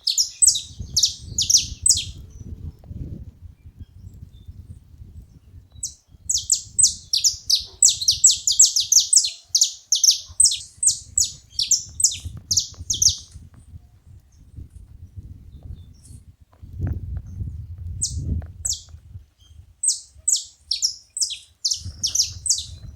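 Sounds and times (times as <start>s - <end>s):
finches calling: 0.0s - 2.2s, 5.8s - 13.3s, 19.8s - 22.8s.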